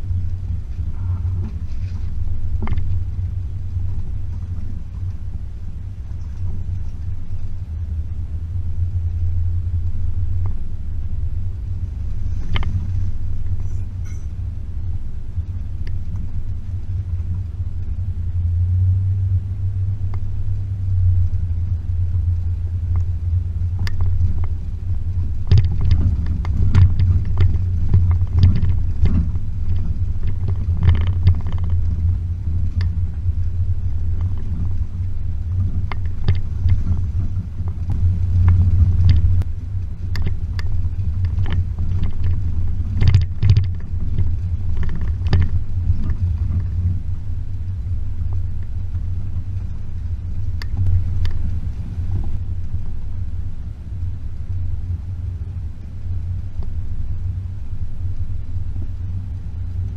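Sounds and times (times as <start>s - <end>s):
knocks and rattles: 0.0s - 5.2s, 23.7s - 47.0s
car engine running: 0.0s - 59.9s.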